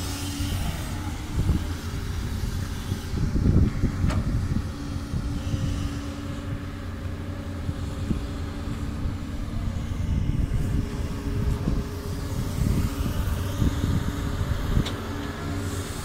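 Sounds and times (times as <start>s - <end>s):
excavator diesel engine running: 0.0s - 16.0s.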